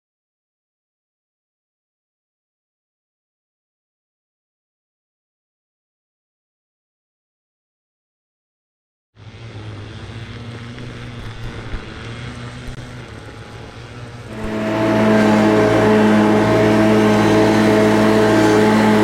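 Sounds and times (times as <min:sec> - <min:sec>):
engine idling and revving: 0:09.2 - 0:19.0.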